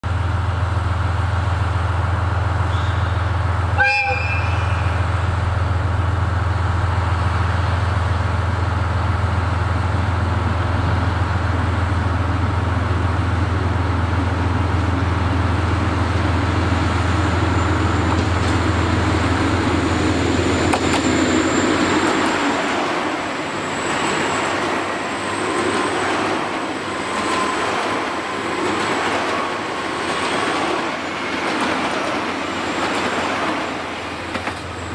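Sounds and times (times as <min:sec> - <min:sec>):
rolling rail noise: 0:00.0 - 0:34.9
train horn toot: 0:02.7 - 0:05.1.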